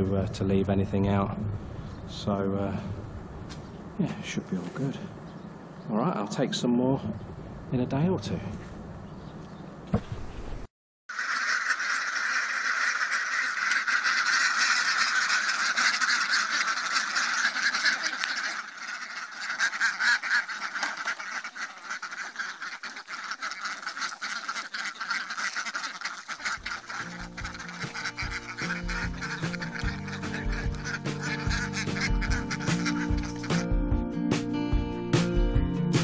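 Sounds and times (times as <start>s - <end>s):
waterfowl flock calling: 11.1s - 34.0s
music: 26.8s - 36.0s.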